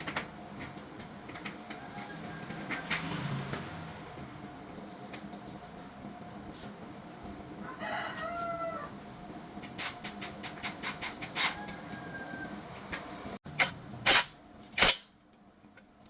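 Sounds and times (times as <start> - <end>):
rooster crowing: 1.7 - 2.9, 7.6 - 9.0, 11.4 - 12.6.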